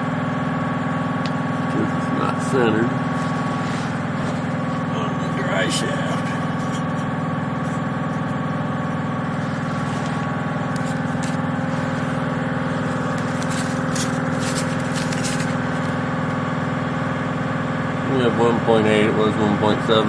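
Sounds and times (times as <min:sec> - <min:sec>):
motor humming: 0:01.0 - 0:18.0
faint clicks and scrapes: 0:09.6 - 0:16.0.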